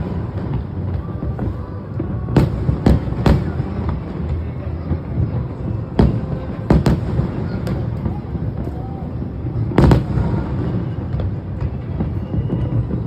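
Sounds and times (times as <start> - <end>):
firework bangs: 0.0 - 13.0.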